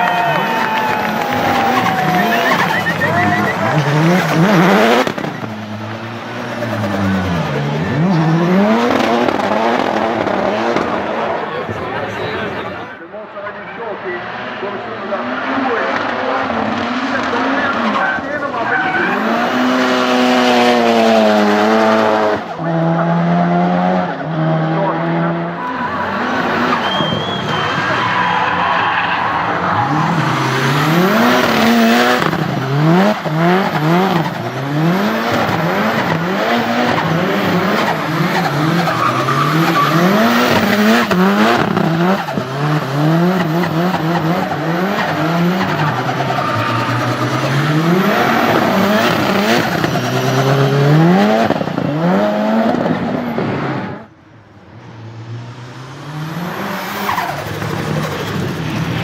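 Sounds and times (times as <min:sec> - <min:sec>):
car engine revving hard: 0:00.0 - 0:11.7, 0:14.7 - 0:28.0, 0:29.3 - 0:54.1, 0:54.8 - 0:59.0
tyre squeal: 0:00.6 - 0:05.5, 0:25.6 - 0:33.3, 0:36.6 - 0:42.9, 0:45.0 - 0:51.1.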